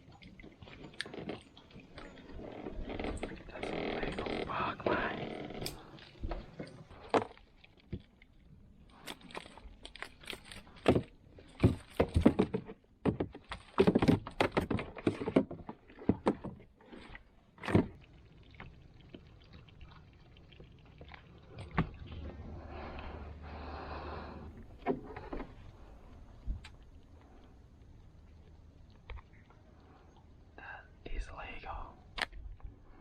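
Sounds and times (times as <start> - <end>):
gear knocking in aluminium boat: 0.0 - 7.3, 10.2 - 17.0.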